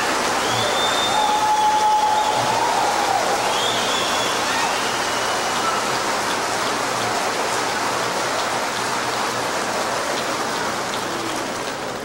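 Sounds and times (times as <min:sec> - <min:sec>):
audience applauding and cheering: 0:00.0 - 0:08.4.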